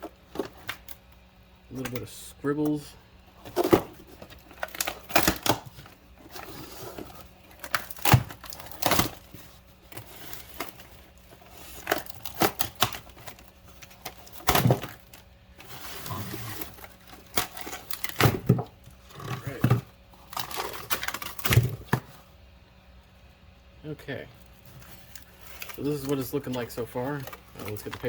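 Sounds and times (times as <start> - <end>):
cardboard and paper ripping: 3.5 - 18.6, 24.7 - 28.0.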